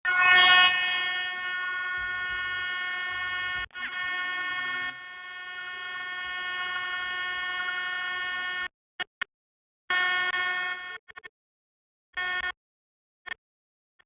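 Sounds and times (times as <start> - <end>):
horn-like tone over phone: 0.0 - 8.7, 9.9 - 11.3, 12.2 - 12.6.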